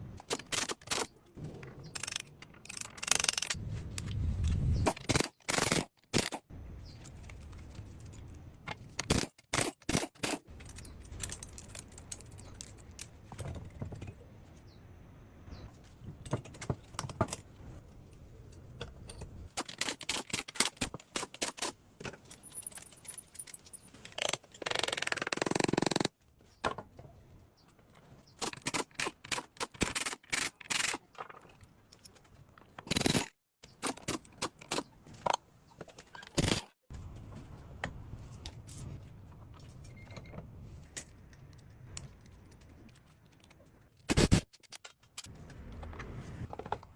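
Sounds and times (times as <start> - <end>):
metal tools clinking and knocking: 10.2 - 14.2, 16.1 - 24.3.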